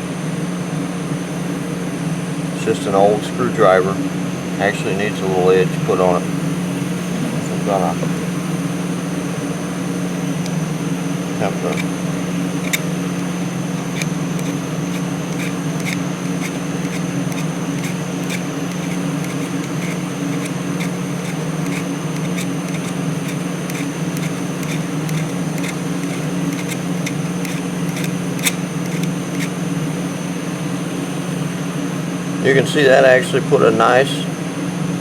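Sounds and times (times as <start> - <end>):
steady machine hum: 6.3 - 32.0
file rasping on screwdriver: 10.3 - 10.8, 11.4 - 29.6.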